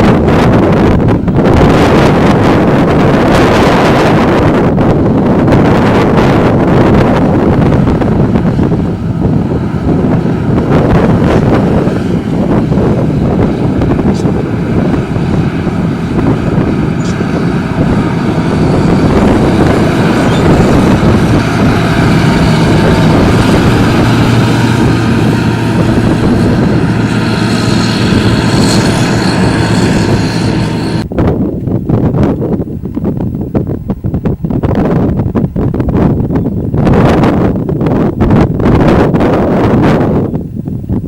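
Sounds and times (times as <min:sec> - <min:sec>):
machinery engine running: 0:00.0 - 0:31.2
wind on microphone: 0:00.0 - 0:41.0.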